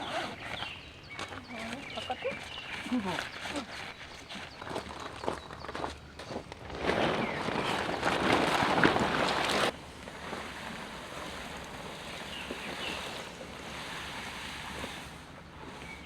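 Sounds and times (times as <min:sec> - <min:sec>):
faint bird chirp: 0:00.0 - 0:06.1
soft steady rain hiss: 0:08.6 - 0:16.0.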